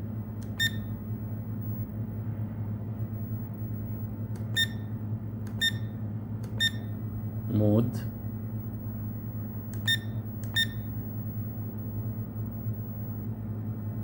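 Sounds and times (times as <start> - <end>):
low electrical hum: 0.0 - 14.0
alarm clock short high beeps: 4.6 - 4.9, 5.6 - 5.9, 6.6 - 6.9, 9.9 - 10.9.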